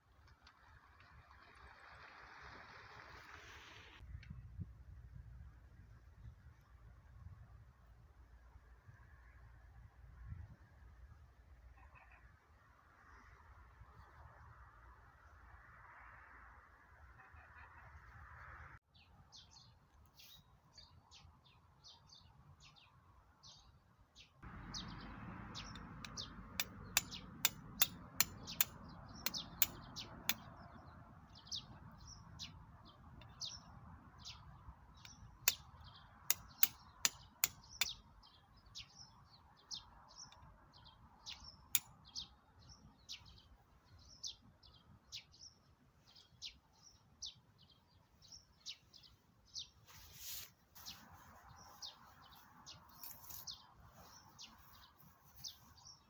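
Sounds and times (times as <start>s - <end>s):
small birds chirping: 18.9s - 56.0s.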